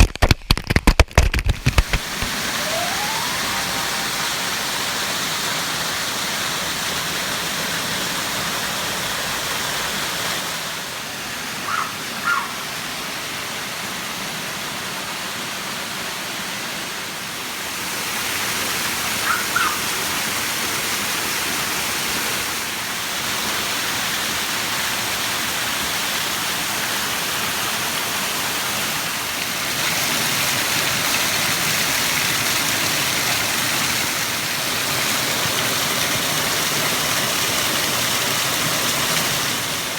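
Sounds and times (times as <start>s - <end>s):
waterfall roaring: 1.5s - 39.9s
high chirps: 2.3s - 4.9s.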